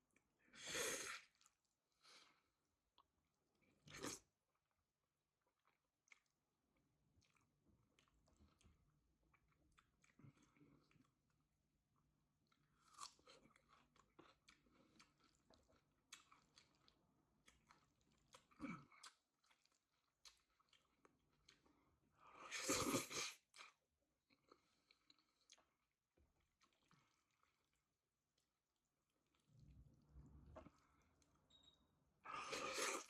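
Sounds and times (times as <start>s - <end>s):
person chewing food: 5.4s - 31.5s.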